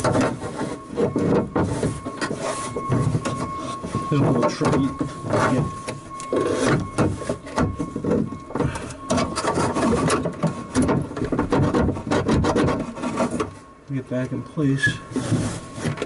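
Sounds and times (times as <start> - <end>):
clicking and scraping of parts: 0.0 - 14.0, 14.8 - 16.0.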